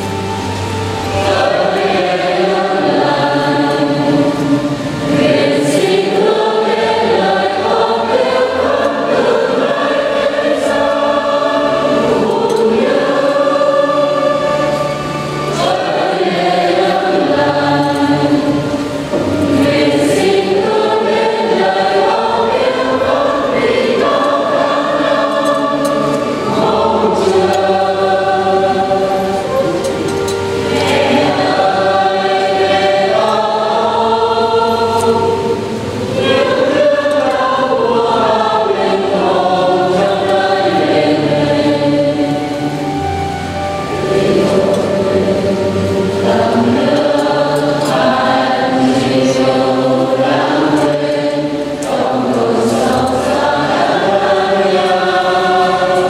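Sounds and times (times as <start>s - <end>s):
choir singing a hymn: 0.0s - 56.0s.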